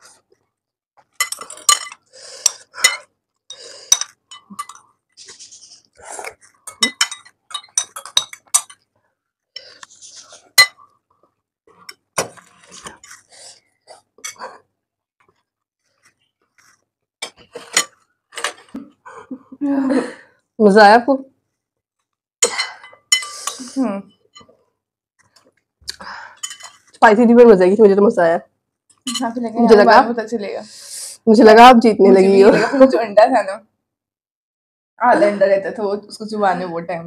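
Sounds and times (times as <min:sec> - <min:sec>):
cutlery clinking against bowls: 0:01.0 - 0:05.0, 0:06.3 - 0:08.9, 0:10.5 - 0:10.9, 0:14.2 - 0:14.6, 0:17.2 - 0:18.8, 0:22.4 - 0:24.6, 0:26.4 - 0:27.0, 0:28.9 - 0:29.4.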